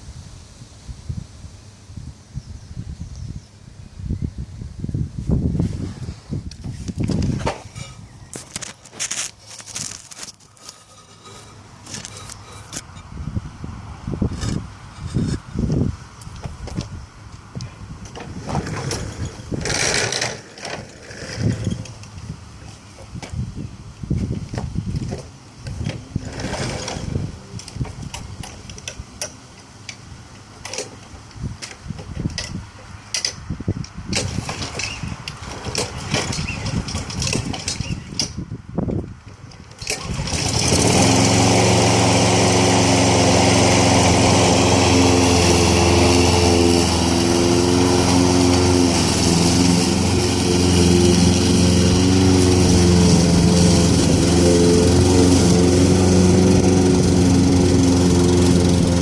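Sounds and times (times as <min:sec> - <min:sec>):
lawn mower engine running: 0:05.6 - 0:13.1, 0:14.3 - 0:23.5, 0:24.2 - 0:38.4, 0:39.2 - 0:59.0.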